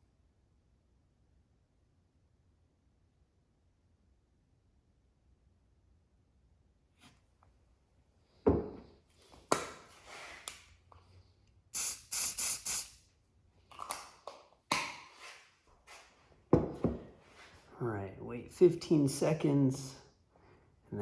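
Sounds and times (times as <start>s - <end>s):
pump spray bursts: 11.8s - 13.0s.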